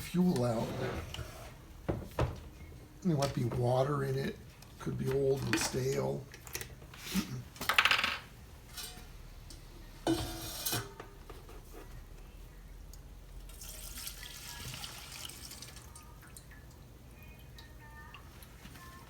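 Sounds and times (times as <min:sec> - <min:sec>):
fuel pouring and trickling: 0:13.5 - 0:16.7.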